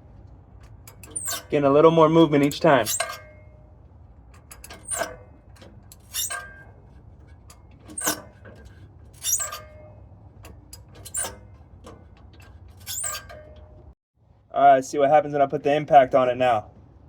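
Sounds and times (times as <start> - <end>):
wrench clinking and scraping on metal: 0.6 - 14.0.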